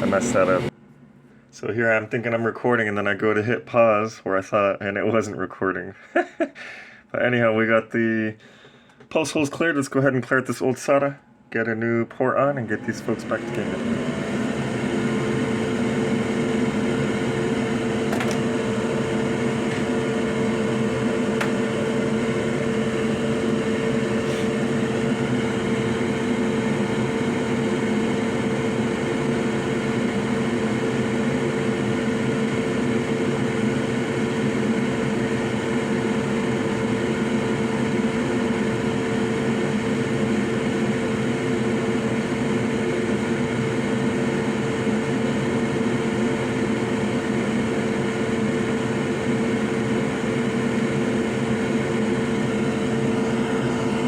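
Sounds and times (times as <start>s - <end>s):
hot air blower whining: 0.0s - 0.8s, 12.3s - 54.0s.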